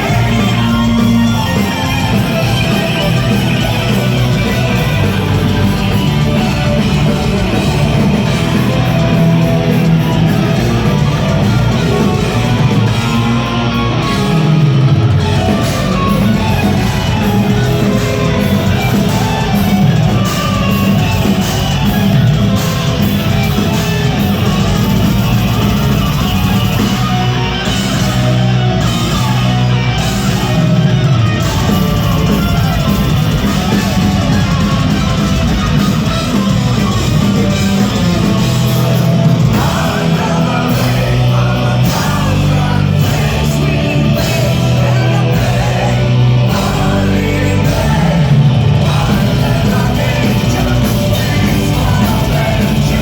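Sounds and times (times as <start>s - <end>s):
bass guitar: 0.0s - 53.0s
drums: 0.0s - 53.0s
electric guitars: 0.0s - 53.0s
lead singer singing: 36.0s - 53.0s.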